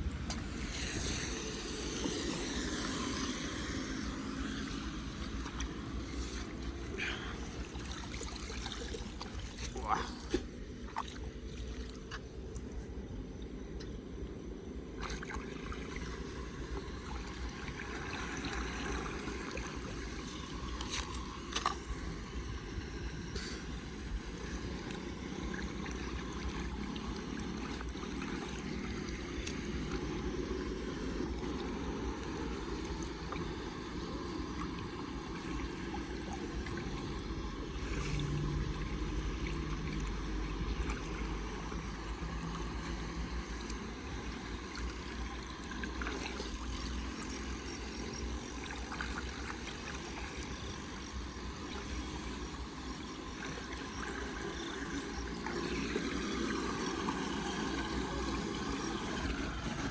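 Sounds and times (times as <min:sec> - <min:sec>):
floodwater rushing: 0:00.1 - 0:12.6, 0:14.9 - 0:22.6.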